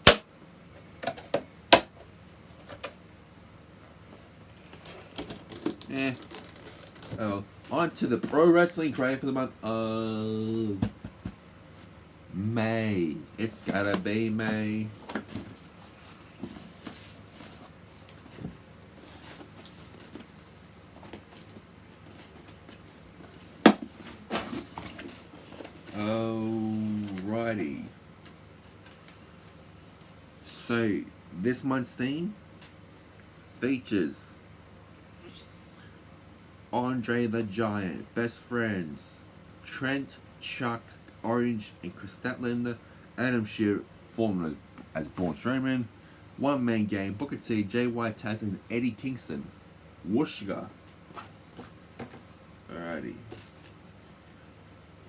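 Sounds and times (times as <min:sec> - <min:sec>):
cardboard box rustling and scraping: 0:13.6 - 0:20.3.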